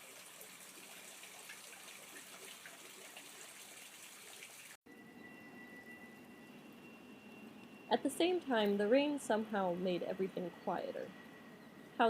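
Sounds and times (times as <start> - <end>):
rain falling: 0.0 - 4.8.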